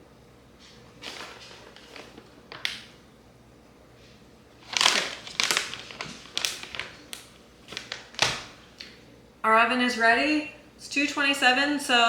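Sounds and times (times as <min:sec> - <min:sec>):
packaging crinkling and crunching: 0:04.6 - 0:08.8.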